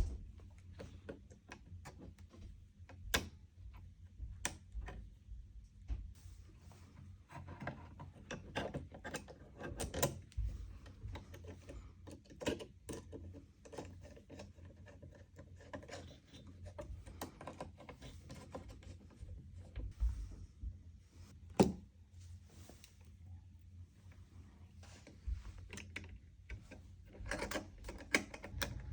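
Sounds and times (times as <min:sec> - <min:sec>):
steady low hum: 0:16.4 - 0:28.9.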